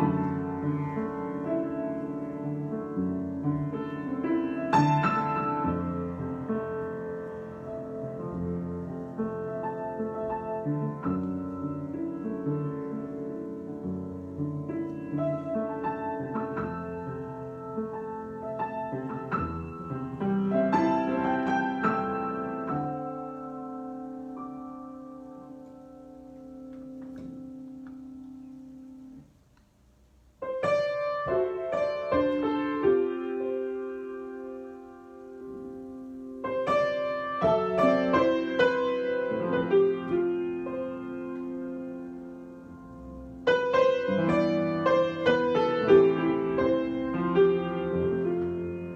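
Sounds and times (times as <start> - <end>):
piano improvisation: 0.0 - 29.6, 30.2 - 48.9.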